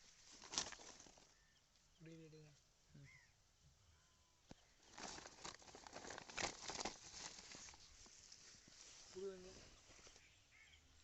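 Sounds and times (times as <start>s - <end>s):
crinkling handling noise: 0.0s - 1.4s, 4.5s - 10.4s.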